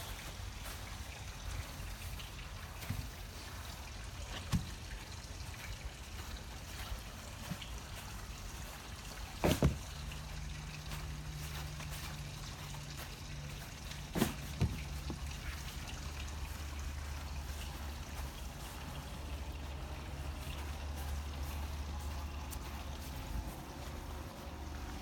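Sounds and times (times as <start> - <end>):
sharp knocks and clunks: 9.3 - 10.1, 14.0 - 15.5.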